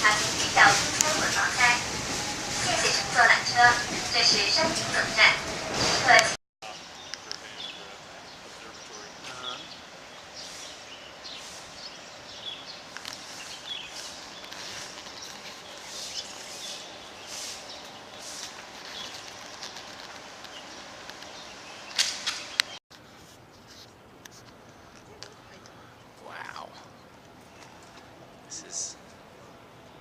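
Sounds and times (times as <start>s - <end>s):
birds chirping: 2.6s - 22.8s.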